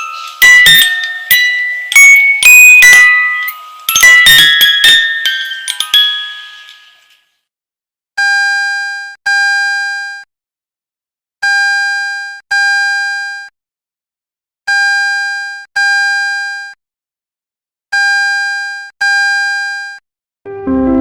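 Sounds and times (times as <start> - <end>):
electronic buzzer beeps: 8.2 - 10.3, 11.4 - 13.5, 14.7 - 16.8, 18.0 - 20.0.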